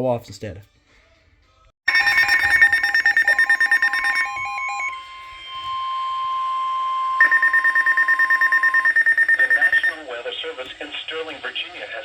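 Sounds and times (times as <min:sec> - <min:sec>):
rapid pulsed beeping alarms: 0:01.9 - 0:10.0
steady alarm tone: 0:01.9 - 0:10.0.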